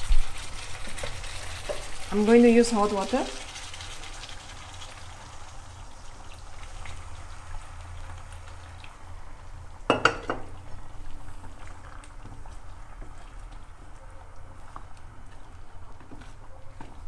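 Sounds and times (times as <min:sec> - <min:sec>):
curry bubbling and sizzling in pot: 0:00.0 - 0:17.0
metallic clatter of cookware: 0:09.9 - 0:10.5.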